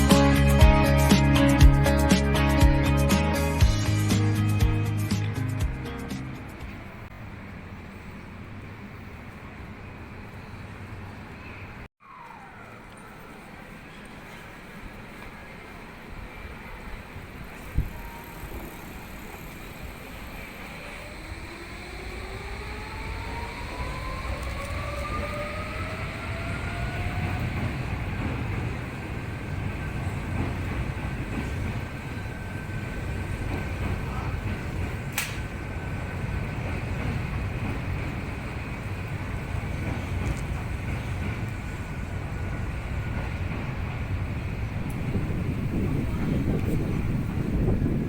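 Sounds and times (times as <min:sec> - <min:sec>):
wheels rumbling on rail: 0:00.0 - 0:48.0
electric train motors whining: 0:17.2 - 0:48.0.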